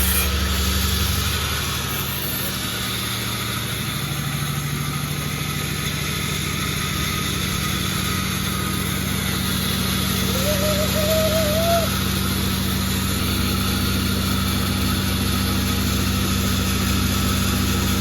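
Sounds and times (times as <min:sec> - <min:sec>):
sawmill engine humming: 0:00.0 - 0:18.0
wavering whistle-like tone: 0:10.1 - 0:12.0.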